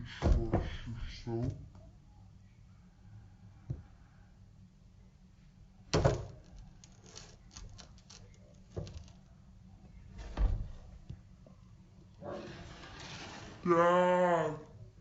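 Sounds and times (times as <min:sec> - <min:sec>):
objects knocking when set down: 0:05.9 - 0:09.1.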